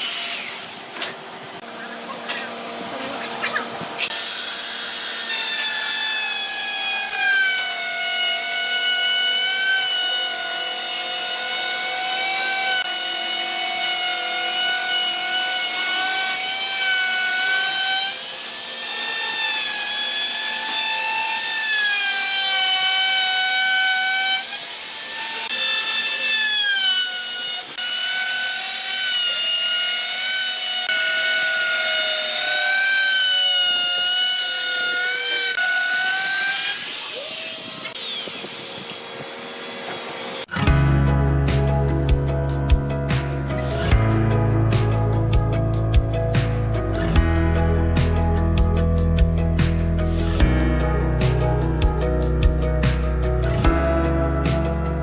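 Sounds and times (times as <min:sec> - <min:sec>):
electric power tool on wood: 0:00.0 - 0:01.7, 0:02.6 - 0:40.7.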